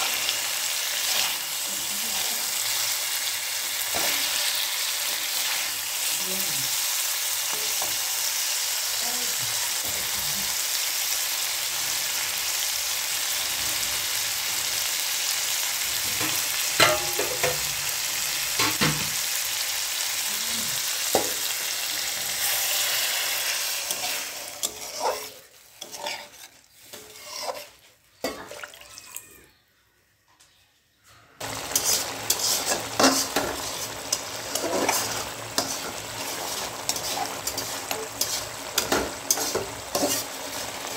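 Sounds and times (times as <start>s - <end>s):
spatula scraping a pan: 0.0s - 3.2s, 3.8s - 6.0s, 21.9s - 28.6s, 31.4s - 40.9s
fish sizzling in hot oil: 0.0s - 27.8s, 31.4s - 40.9s.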